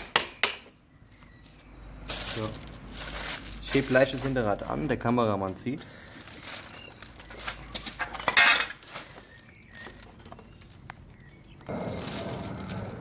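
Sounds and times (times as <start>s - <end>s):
metal clinking and scraping: 7.9s - 8.8s.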